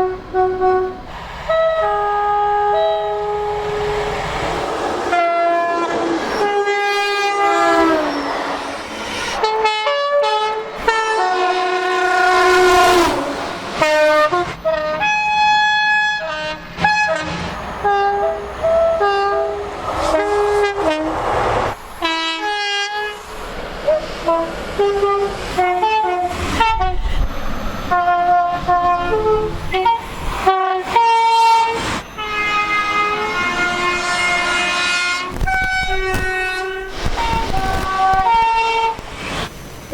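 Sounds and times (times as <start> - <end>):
train horn blasts: 0.0 - 4.3, 5.1 - 23.3, 23.9 - 27.2, 27.9 - 39.0.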